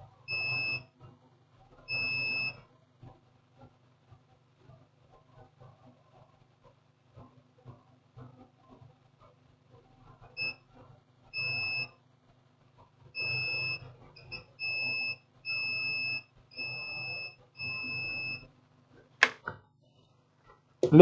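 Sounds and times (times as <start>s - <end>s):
multimeter continuity beeps: 0.3s - 0.9s, 1.9s - 2.6s, 10.4s - 10.6s, 11.4s - 11.9s, 13.2s - 18.5s.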